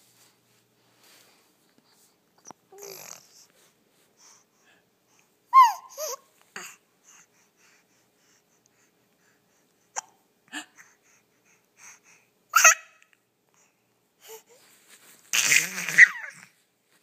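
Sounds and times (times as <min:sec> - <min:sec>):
child hiccuping: 0:12.6 - 0:13.0, 0:15.4 - 0:16.4.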